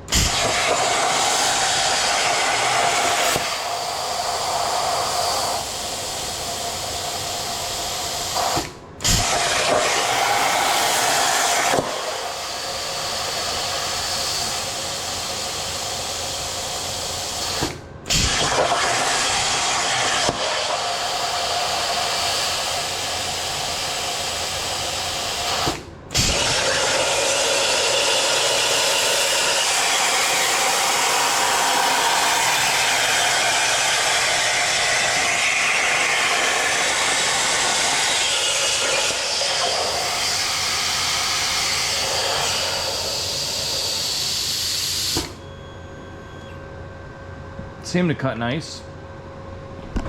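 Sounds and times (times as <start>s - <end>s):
plasma cutter hissing: 0.0s - 45.4s.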